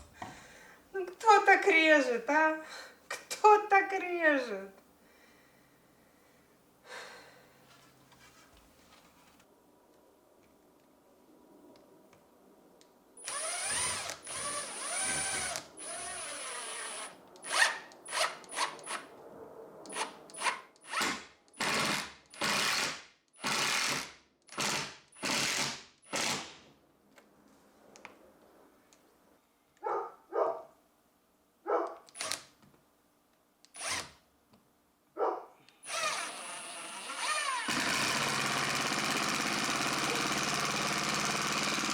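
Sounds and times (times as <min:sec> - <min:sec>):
handheld power tool running: 0:13.2 - 0:18.6, 0:35.9 - 0:41.9.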